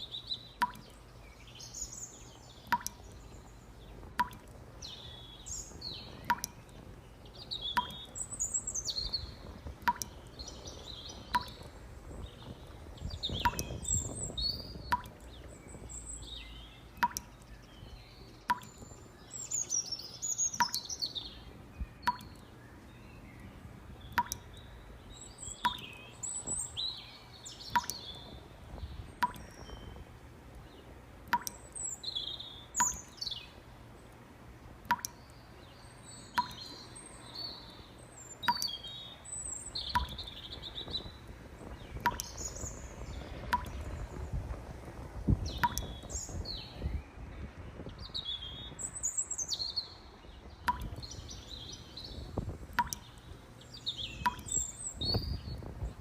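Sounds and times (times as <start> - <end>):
birds chirping and singing: 45.3 - 56.0.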